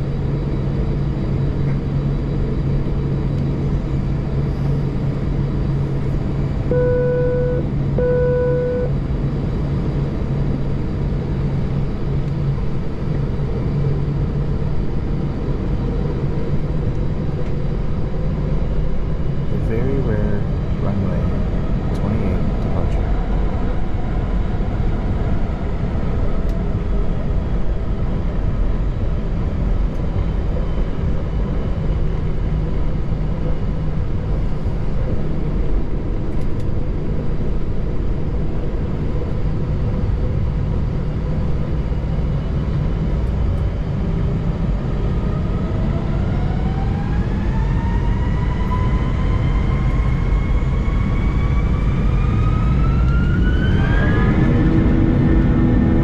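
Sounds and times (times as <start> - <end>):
aircraft cabin rumble: 0.0 - 46.8
jet engines spooling up: 43.6 - 56.0.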